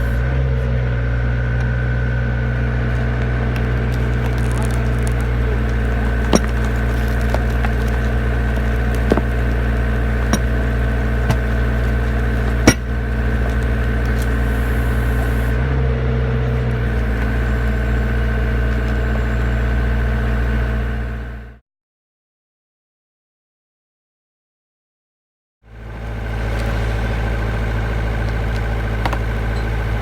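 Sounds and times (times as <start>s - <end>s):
hydraulic power unit running: 0.0s - 21.6s, 25.8s - 30.0s
concrete cracking: 2.6s - 15.6s, 16.8s - 19.5s.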